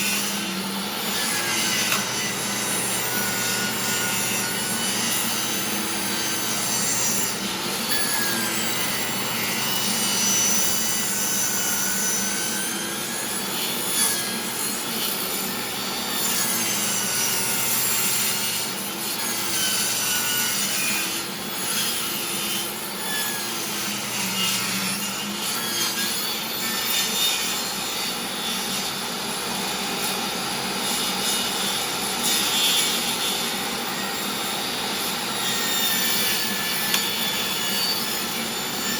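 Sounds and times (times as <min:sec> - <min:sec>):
table saw cutting board: 0:00.0 - 0:38.9.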